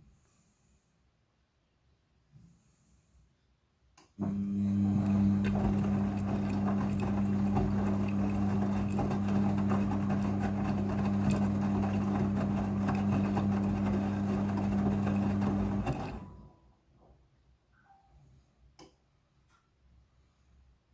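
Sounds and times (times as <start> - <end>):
washing machine humming: 4.2 - 16.6
water and tumbling noise: 4.3 - 16.2.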